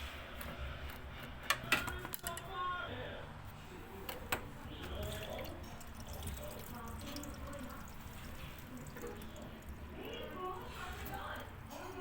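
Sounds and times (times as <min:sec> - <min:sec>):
water dripping and trickling: 0:04.9 - 0:11.7.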